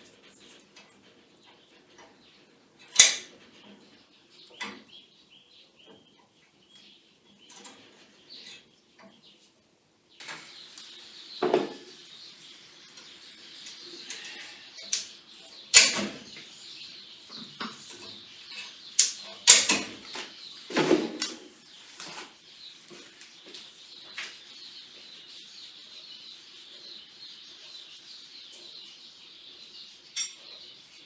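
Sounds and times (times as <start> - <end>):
knocks and clicks of tools: 3.0 - 3.3, 15.7 - 16.2, 19.0 - 21.4.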